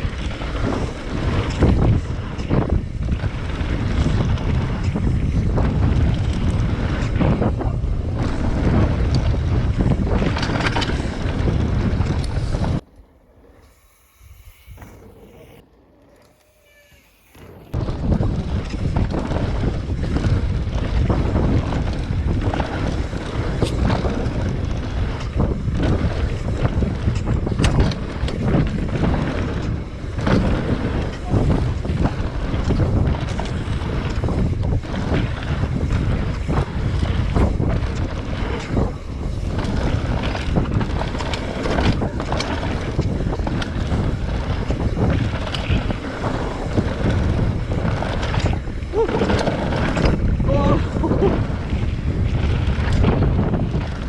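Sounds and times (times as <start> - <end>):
tyres rumbling over dirt: 0.0 - 12.9, 17.4 - 54.0
wind buffeting microphone: 0.0 - 16.2, 17.2 - 54.0
bike knocks and rattles: 18.0 - 54.0.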